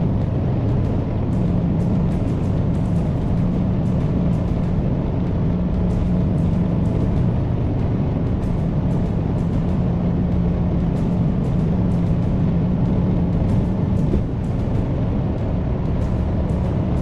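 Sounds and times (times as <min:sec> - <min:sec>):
background music: 0:00.0 - 0:17.0
truck engine and road noise: 0:00.0 - 0:17.0.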